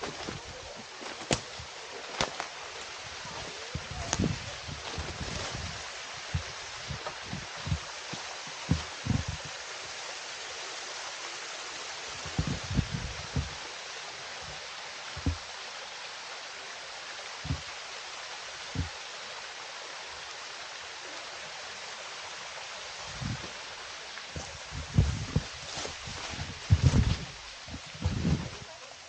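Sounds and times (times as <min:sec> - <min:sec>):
waterfall rushing: 0:00.0 - 0:29.0
short low thumps: 0:03.3 - 0:08.0, 0:08.6 - 0:09.6, 0:12.2 - 0:13.6, 0:15.2 - 0:15.4, 0:17.5 - 0:17.7, 0:23.1 - 0:23.6, 0:24.4 - 0:28.6.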